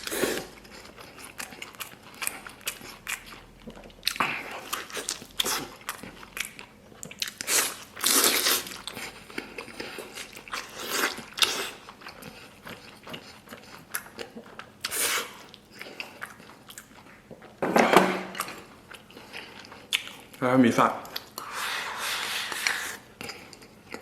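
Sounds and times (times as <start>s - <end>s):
biting and chewing meat: 0.0s - 17.6s.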